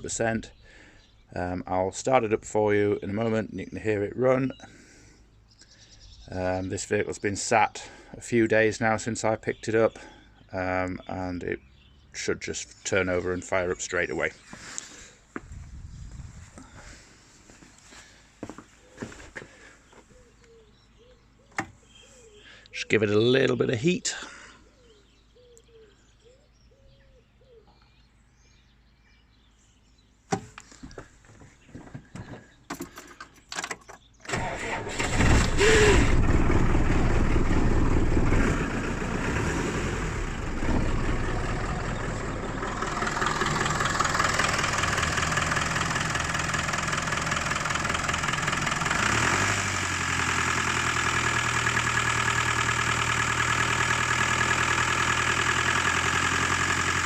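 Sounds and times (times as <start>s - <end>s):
diesel engine cranking and idling: 32.4s - 57.0s.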